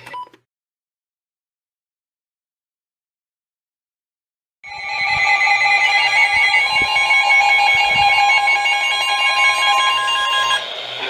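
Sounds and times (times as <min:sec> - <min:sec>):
loud two-tone alarm: 0:04.6 - 0:11.0.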